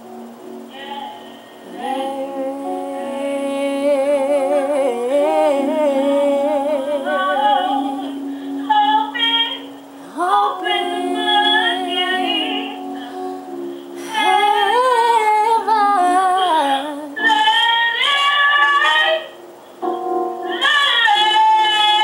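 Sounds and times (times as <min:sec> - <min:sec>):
steady sustained chord: 0:00.0 - 0:17.4
woman singing gospel: 0:00.7 - 0:13.3, 0:14.0 - 0:19.4, 0:20.4 - 0:22.0.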